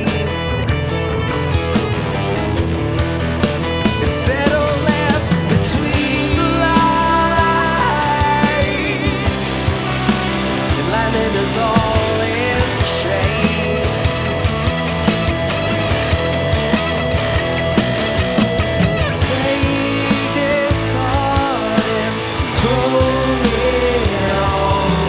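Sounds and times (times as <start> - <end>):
rock band playing live: 0.0 - 25.0.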